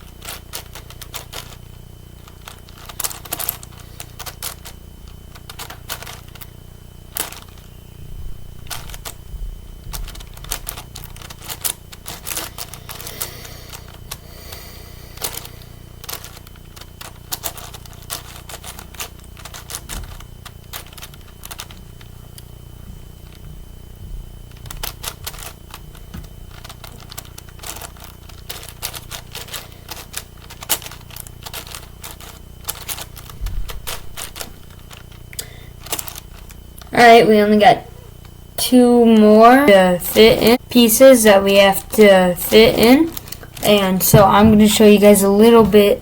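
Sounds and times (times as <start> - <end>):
puzzle cube layers clicking: 24.6 - 25.8.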